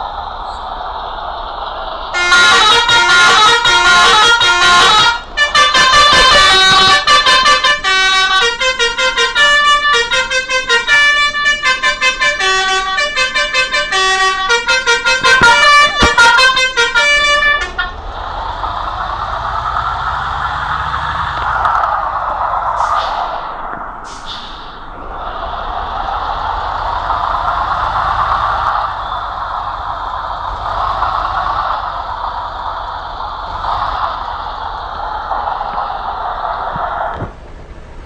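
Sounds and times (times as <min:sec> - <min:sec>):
traffic noise: 0:00.0 - 0:38.0
multi-tone bus horn tune: 0:02.1 - 0:21.7.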